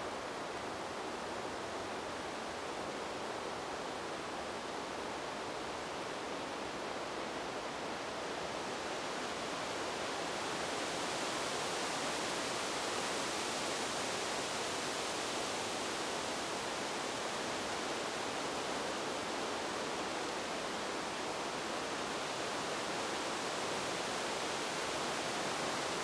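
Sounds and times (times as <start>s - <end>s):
wind blowing through trees: 0.0s - 26.0s.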